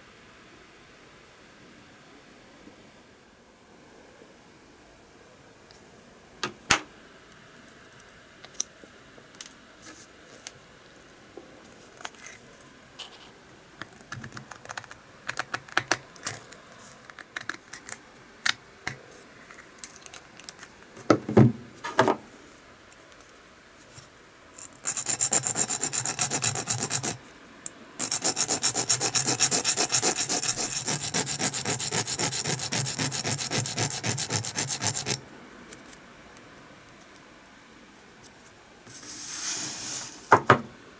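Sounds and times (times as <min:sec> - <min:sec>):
metal rasping strokes: 0:24.7 - 0:27.2, 0:28.0 - 0:35.2.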